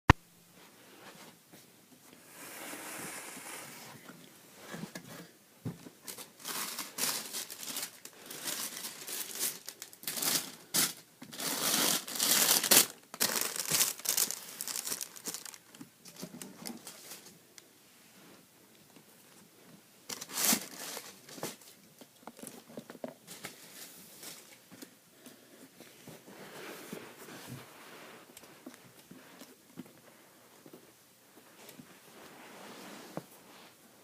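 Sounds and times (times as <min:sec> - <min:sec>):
sneakers and packaging rustling: 0:04.7 - 0:17.4, 0:20.1 - 0:25.0.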